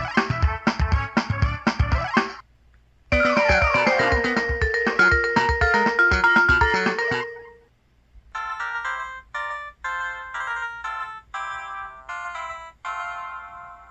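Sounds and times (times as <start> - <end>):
chime-like jingle: 3.1 - 7.6
polyphonic phone melody: 3.1 - 7.7, 8.4 - 13.9.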